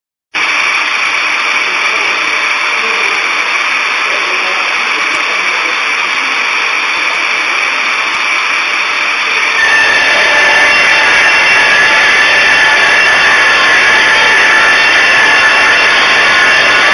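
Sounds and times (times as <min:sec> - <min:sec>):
circular saw blades whining: 0:00.4 - 0:16.9
board cutting through saws: 0:09.3 - 0:16.9.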